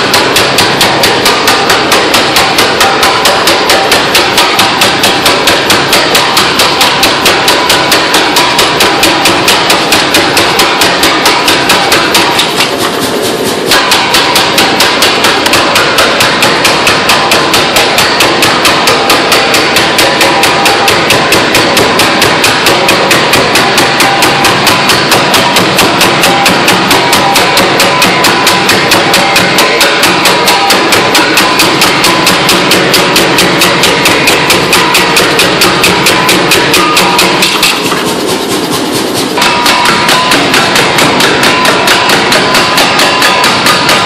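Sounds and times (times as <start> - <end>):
hammer blows on metal: 0.0 - 44.0.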